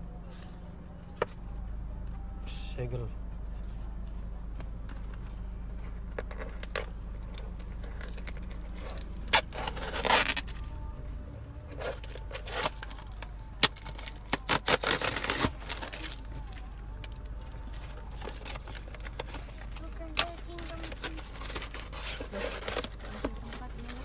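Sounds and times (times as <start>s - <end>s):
package being torn open: 11.8s - 16.3s.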